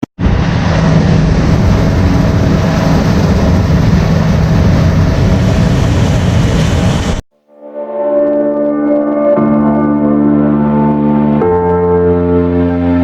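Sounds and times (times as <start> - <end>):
heavy farm machinery droning: 0.2 - 7.2.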